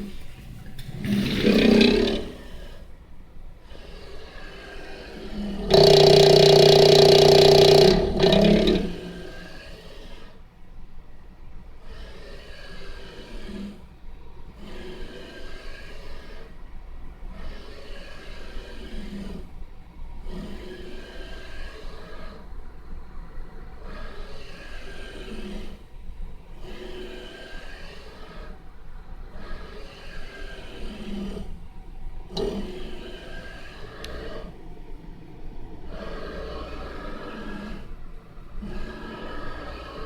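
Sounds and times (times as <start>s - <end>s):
motor whining: 0.0s - 2.9s, 5.2s - 9.8s.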